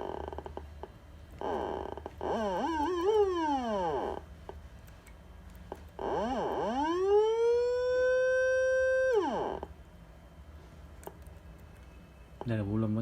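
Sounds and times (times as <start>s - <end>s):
electronic siren wailing: 1.4s - 4.2s, 6.0s - 9.7s.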